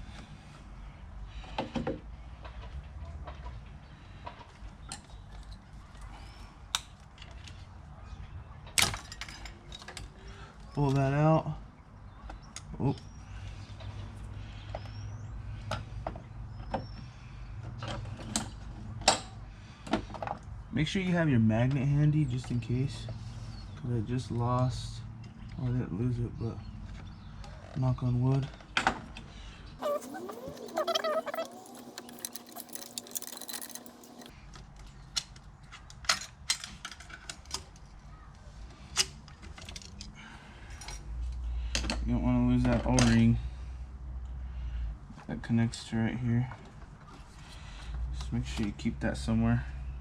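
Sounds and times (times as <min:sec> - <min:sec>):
faint bird chirps: 0:29.8 - 0:34.2
metal parts clicking and clinking: 0:29.8 - 0:34.3
clicks and knocks of small parts: 0:29.8 - 0:38.0, 0:39.0 - 0:40.1.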